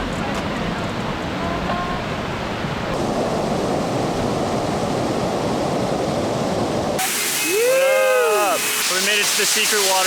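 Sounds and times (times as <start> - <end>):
flowing water rushing: 2.2 - 10.0.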